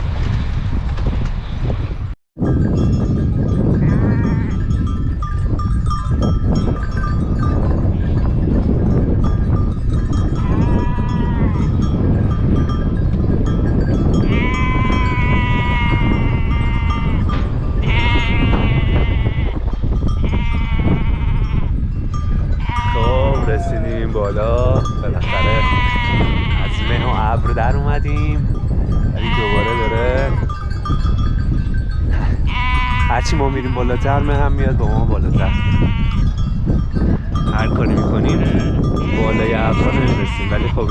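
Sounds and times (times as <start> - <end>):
sheep bleating: 3.8 - 4.6, 10.4 - 11.8, 14.3 - 17.2, 17.8 - 19.6, 20.2 - 21.8, 22.6 - 24.0, 25.0 - 27.4, 29.2 - 30.5, 32.4 - 34.4, 35.3 - 36.3, 38.2 - 40.9.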